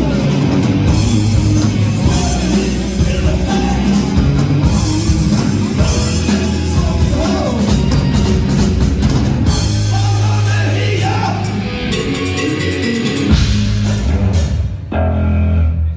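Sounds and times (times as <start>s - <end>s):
person singing: 0.0s - 8.3s, 9.6s - 13.3s
hard rock band playing: 0.0s - 15.9s.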